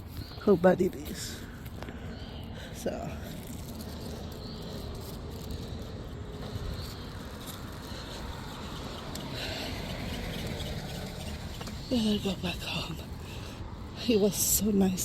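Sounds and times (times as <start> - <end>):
steady low rumble: 0.0 - 15.0
crickets chirping: 1.4 - 14.6.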